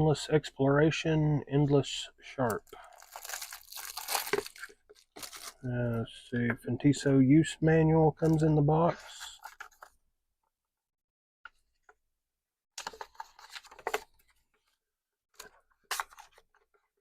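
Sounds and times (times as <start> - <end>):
paper and cardboard rustling: 2.9 - 5.6, 12.8 - 14.4.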